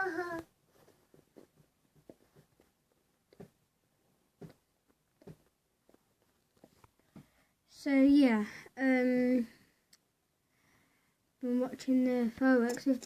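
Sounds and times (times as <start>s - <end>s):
faint knocks and clicks: 0.8s - 3.6s.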